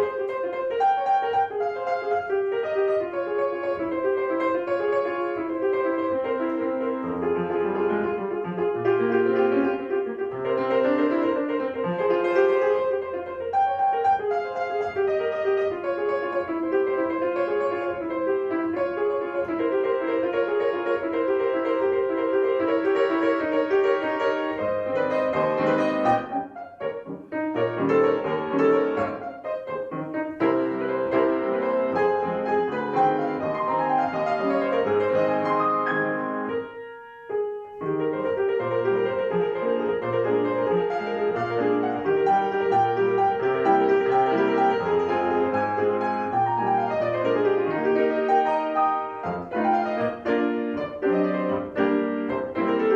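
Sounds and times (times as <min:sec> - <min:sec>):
piano playing: 0:00.0 - 0:52.9.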